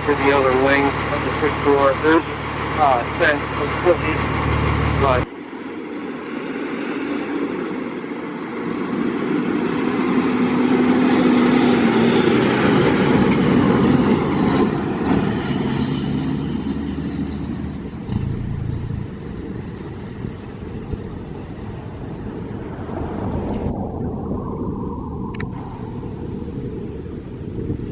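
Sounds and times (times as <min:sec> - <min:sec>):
motor vehicle passing by: 0:11.8 - 0:27.1.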